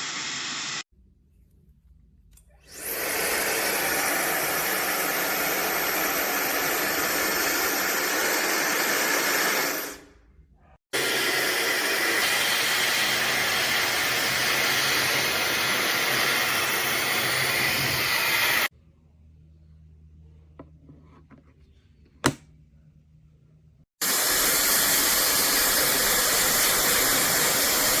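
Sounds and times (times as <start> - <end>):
hair dryer high whine: 2.7 - 10.0, 11.0 - 18.7
hair dryer running: 2.7 - 10.0, 11.0 - 18.7.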